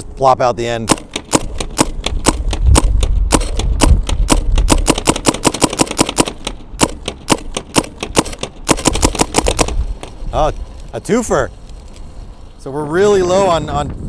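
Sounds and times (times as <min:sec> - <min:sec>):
paintball marker firing rapidly: 0:00.9 - 0:10.4.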